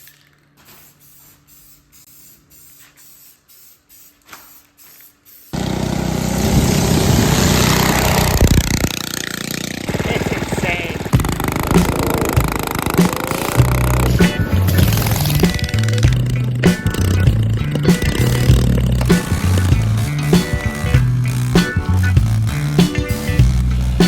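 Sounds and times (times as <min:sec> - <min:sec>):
go-kart engine running rough: 0:05.6 - 0:24.0.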